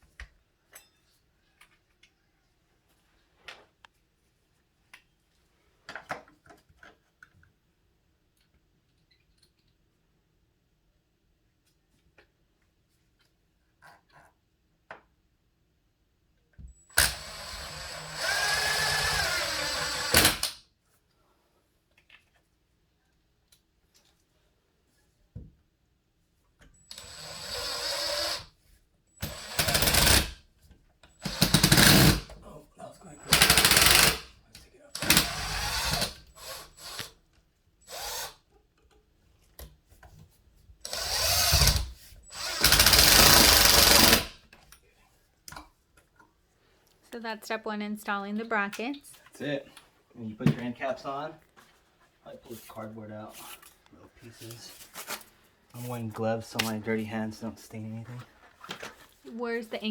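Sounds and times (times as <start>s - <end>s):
power drill driving screws: 16.9s - 20.6s, 26.9s - 28.5s, 29.2s - 30.4s, 31.2s - 32.3s, 33.2s - 34.3s, 35.0s - 37.2s, 37.8s - 38.4s, 40.8s - 44.4s.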